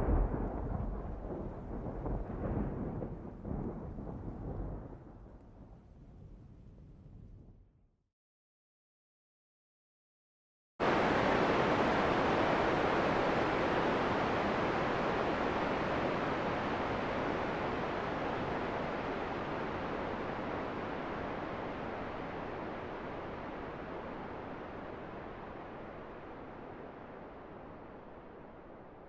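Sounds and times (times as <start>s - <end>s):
heavy rain hiss: 10.8s - 28.2s.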